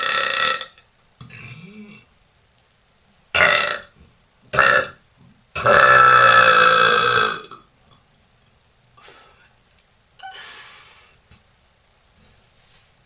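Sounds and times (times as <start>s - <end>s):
woman burping: 3.4s - 3.9s, 5.6s - 7.6s.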